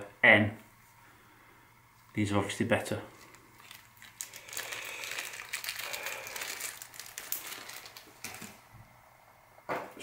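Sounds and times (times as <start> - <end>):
crinkling rustling handling noise: 2.0 - 8.7.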